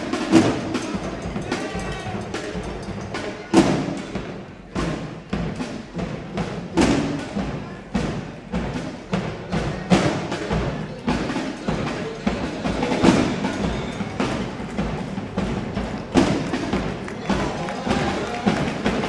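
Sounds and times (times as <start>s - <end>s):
drum line percussion: 0.0s - 19.0s.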